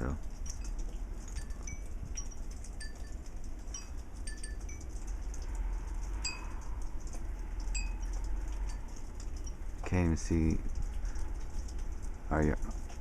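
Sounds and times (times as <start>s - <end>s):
wind chimes tinkling: 0.0s - 7.0s, 7.6s - 10.2s
steady low rumble: 0.0s - 13.0s.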